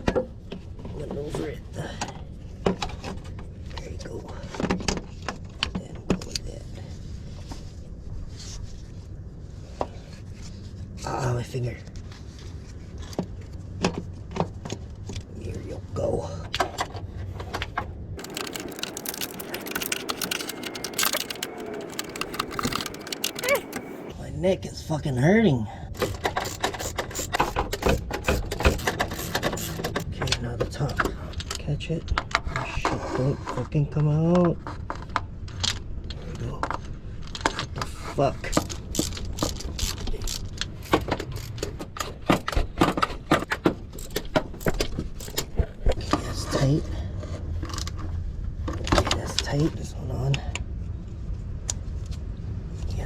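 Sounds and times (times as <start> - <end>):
hand tools clicking and rattling: 18.2 - 24.1, 26.0 - 30.1, 38.4 - 45.6.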